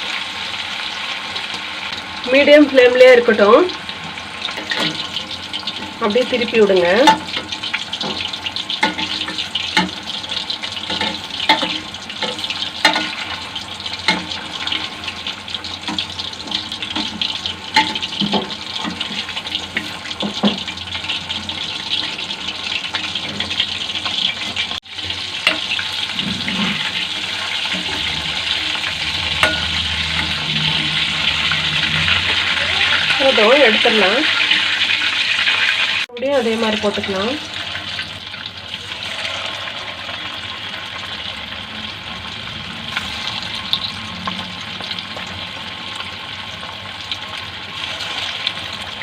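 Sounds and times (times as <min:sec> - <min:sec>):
chicken sizzling in hot oil: 0:00.0 - 0:49.0.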